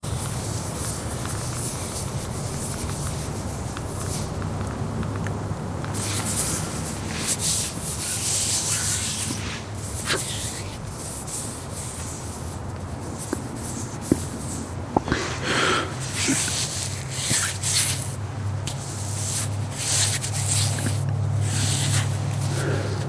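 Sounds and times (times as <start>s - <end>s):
hands rubbing together: 5.9s - 23.0s.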